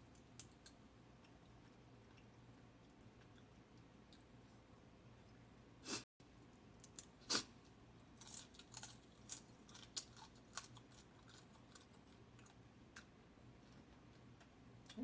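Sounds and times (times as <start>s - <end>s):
chewing: 8.2s - 15.0s.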